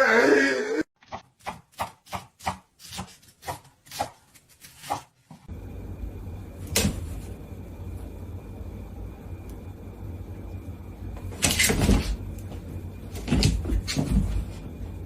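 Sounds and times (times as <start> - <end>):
low hum: 5.5 - 15.0.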